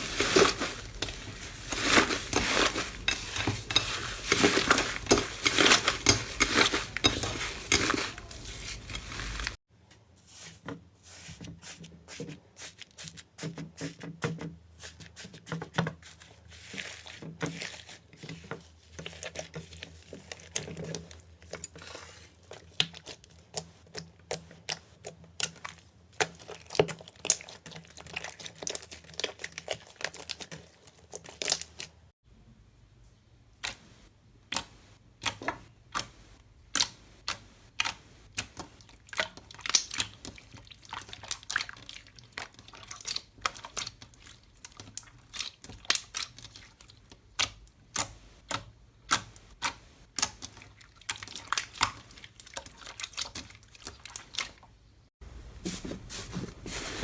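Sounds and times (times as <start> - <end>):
slime crackling and popping: 38.9 - 41.5.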